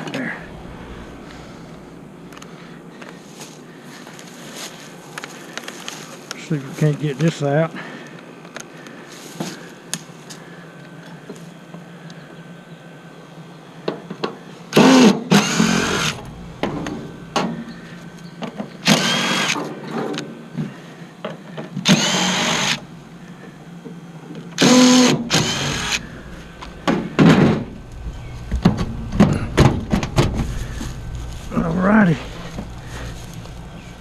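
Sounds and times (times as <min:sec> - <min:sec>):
impact driver whining and rattling: 0:14.7 - 0:19.8, 0:21.7 - 0:22.9, 0:24.6 - 0:31.2.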